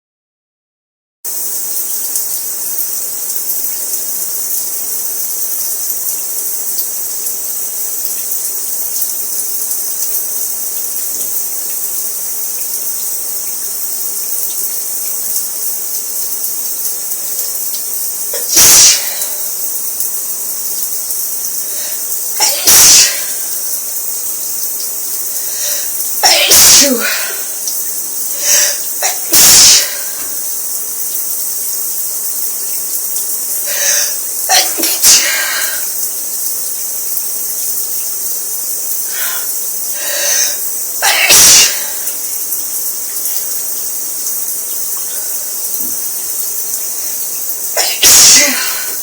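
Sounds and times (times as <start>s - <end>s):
shower water running: 1.3s - 49.0s
person sneezing: 18.4s - 19.4s, 22.4s - 23.5s, 25.6s - 27.6s, 28.4s - 30.4s, 33.7s - 35.9s, 40.0s - 42.0s, 47.8s - 49.0s.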